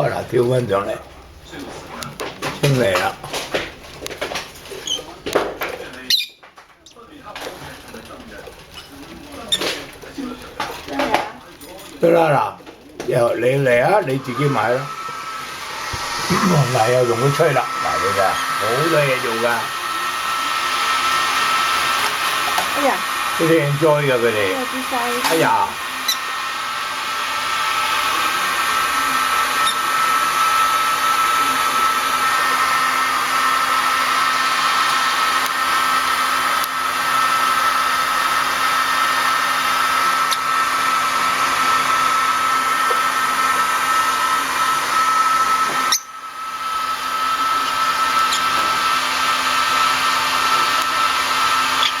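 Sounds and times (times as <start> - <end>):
hair dryer blowing: 2.5 - 3.7, 12.0 - 52.0.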